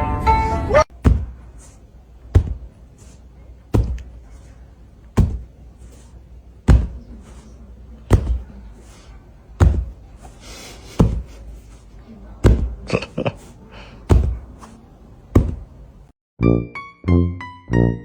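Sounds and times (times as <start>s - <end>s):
dull knocks: 0.9s - 16.1s.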